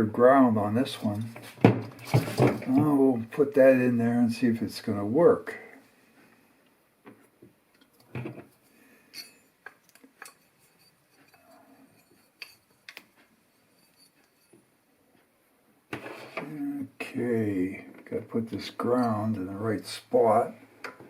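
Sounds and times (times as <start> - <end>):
small parts clicking and clinking: 9.1 - 14.6.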